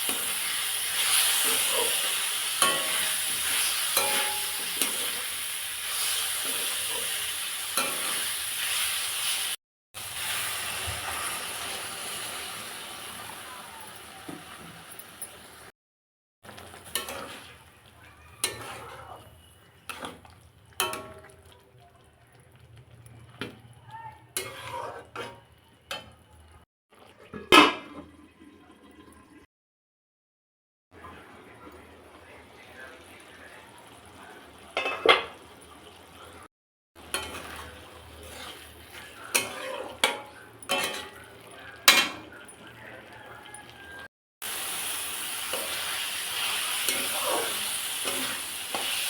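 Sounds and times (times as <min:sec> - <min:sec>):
greens sizzling in a pan: 0:00.0 - 0:15.7, 0:43.4 - 0:49.0.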